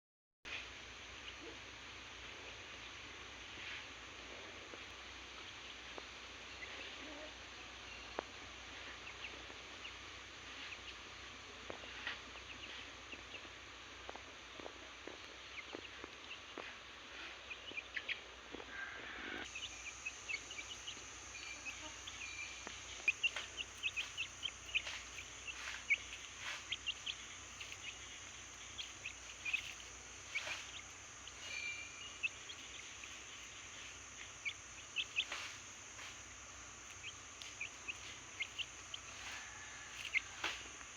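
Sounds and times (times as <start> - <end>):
baby chicks peeping: 1.2 - 40.9
high-pitched background noise: 19.4 - 40.9.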